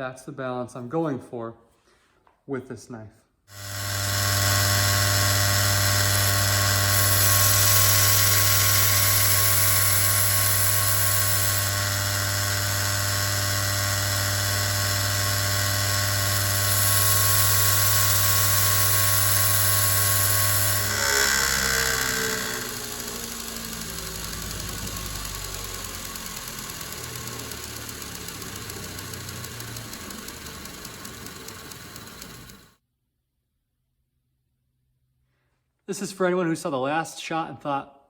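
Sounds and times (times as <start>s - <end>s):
steel grinding hiss: 3.5s - 32.7s
electric grinder running: 3.5s - 32.8s
grinder spinning down: 3.5s - 32.8s.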